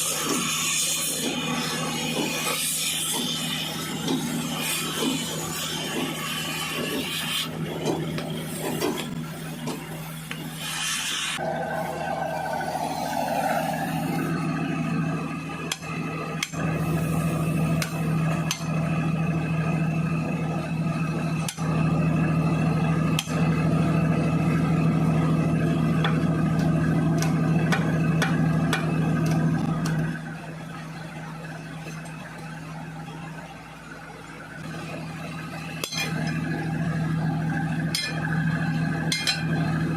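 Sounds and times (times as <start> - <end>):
metal rasping and scraping: 0.0 - 14.6
machine drone with low hum: 0.0 - 39.9.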